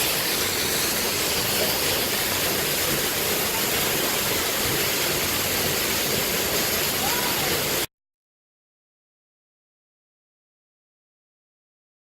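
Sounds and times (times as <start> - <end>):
waterfall rushing: 0.0 - 7.9.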